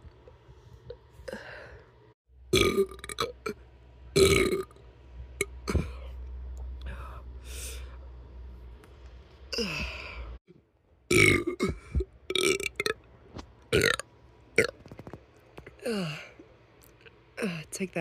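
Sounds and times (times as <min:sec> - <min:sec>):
low steady hum: 0:00.0 - 0:18.0
person burping: 0:02.5 - 0:03.6, 0:04.2 - 0:04.7, 0:05.4 - 0:06.1, 0:11.1 - 0:13.0, 0:13.8 - 0:14.0.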